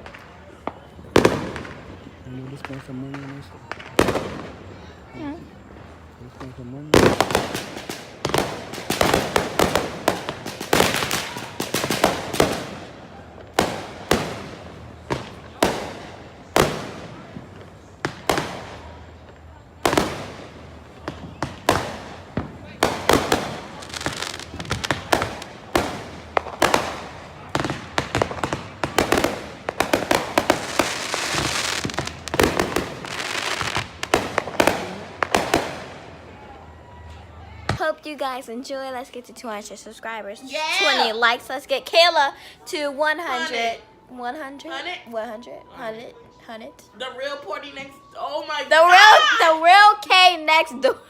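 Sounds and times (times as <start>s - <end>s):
fireworks bangs and crackles: 0.0s - 38.2s.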